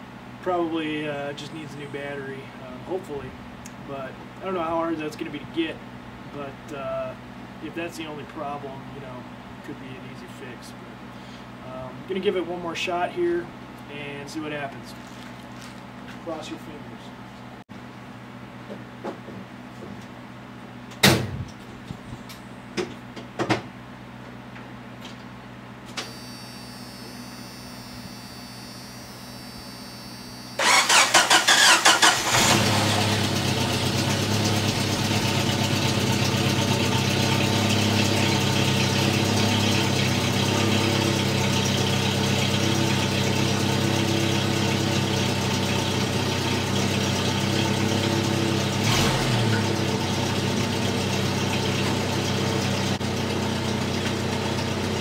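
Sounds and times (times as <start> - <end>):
engine cranking and idling: 30.6 - 55.0.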